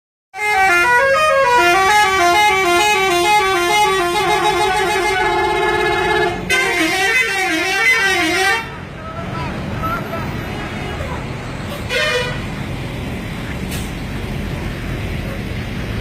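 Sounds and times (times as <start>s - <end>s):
bus horns playing melody: 0.4s - 8.9s, 9.8s - 12.6s.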